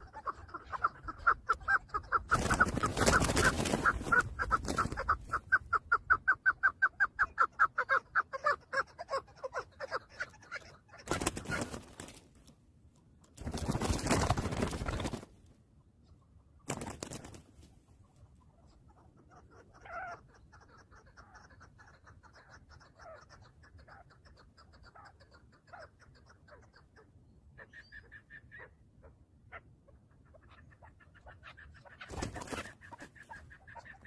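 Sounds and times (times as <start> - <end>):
faint bird calls: 0.0 - 12.1, 15.8 - 34.0.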